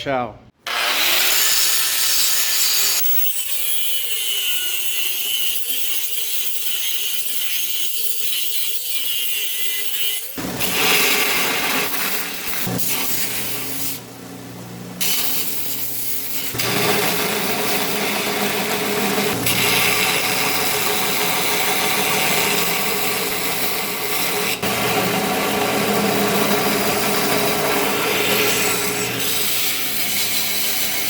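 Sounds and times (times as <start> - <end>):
power tool rasping on steel: 0.7 - 14.0, 15.0 - 31.0
motor humming: 10.4 - 31.0.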